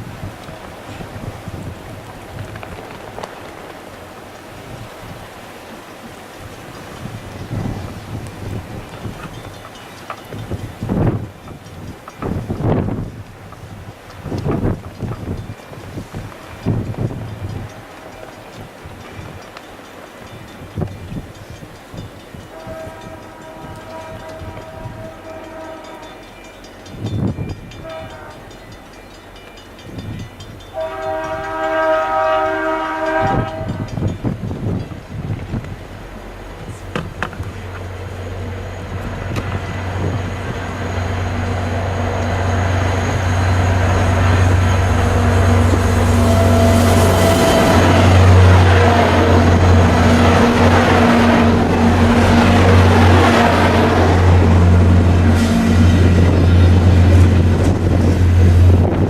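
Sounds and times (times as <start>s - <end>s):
diesel locomotive engine hum: 0.0s - 59.0s
locomotive air horn: 22.5s - 26.2s, 27.8s - 28.5s, 30.7s - 34.0s, 39.8s - 59.0s.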